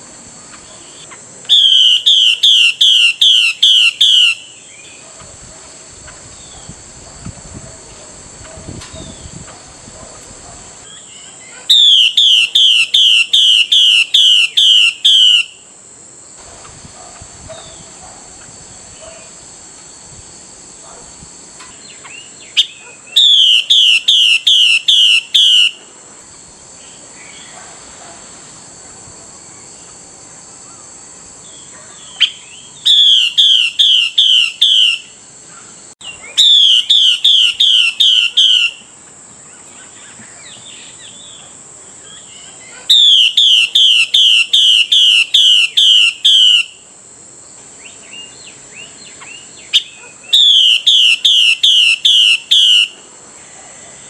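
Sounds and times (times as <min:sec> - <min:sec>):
steady high hiss: 0:00.0 - 0:54.0
bird whistled calls: 0:00.8 - 0:05.0, 0:10.8 - 0:15.6, 0:21.9 - 0:25.8, 0:32.0 - 0:35.2, 0:36.0 - 0:38.8, 0:42.1 - 0:46.8, 0:47.8 - 0:53.0.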